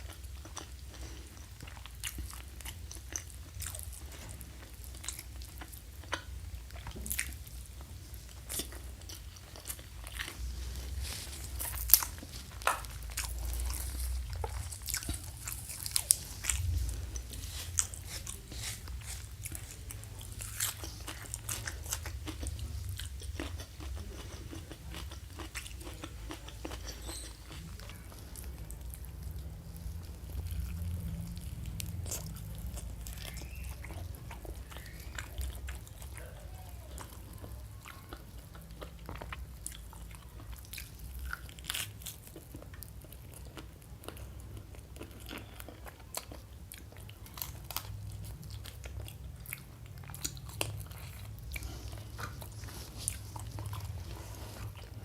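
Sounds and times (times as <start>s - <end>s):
chewing crunchy food: 0.0s - 55.0s
low rumble: 10.0s - 20.6s, 27.8s - 35.4s.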